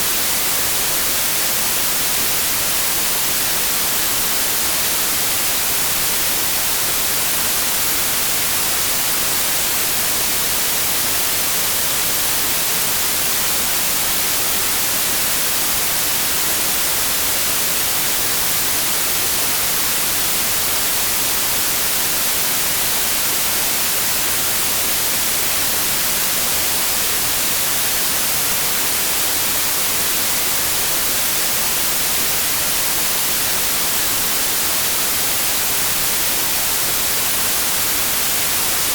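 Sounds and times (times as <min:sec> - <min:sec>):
white noise hiss: 0:00.0 - 0:38.9.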